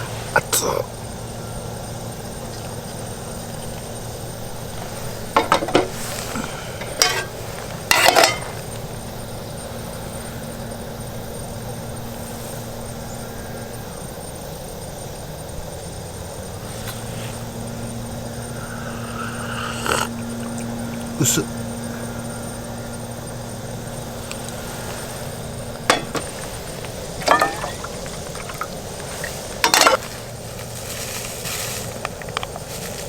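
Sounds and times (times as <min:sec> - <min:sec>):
steady low hum: 0:00.0 - 0:33.0
metal cookware clinking and scraping: 0:04.8 - 0:09.0, 0:24.5 - 0:30.1.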